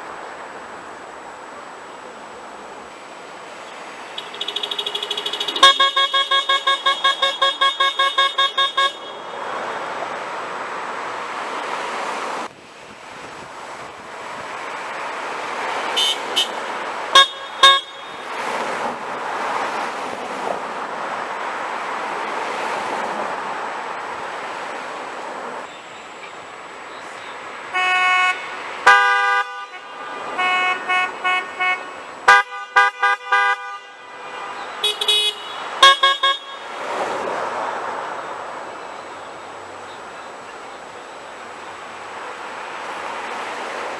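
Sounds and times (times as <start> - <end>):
passing traffic: 0.0 - 43.9
car horns honking: 3.6 - 10.4, 15.6 - 19.0, 27.0 - 37.0
short horn beeps: 4.1 - 9.6, 17.2 - 18.3, 34.5 - 36.7.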